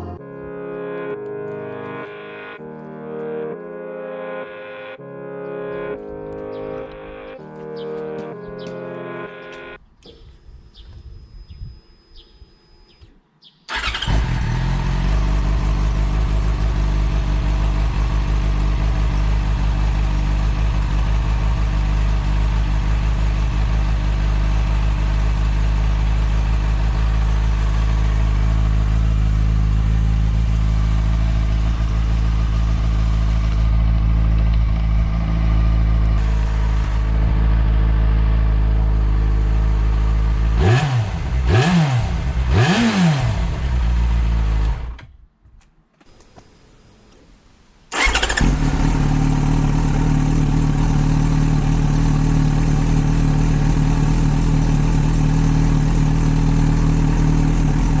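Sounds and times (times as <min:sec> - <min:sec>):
motorcycle engine idling and revving: 0:13.7 - 0:45.2, 0:47.9 - 0:58.0.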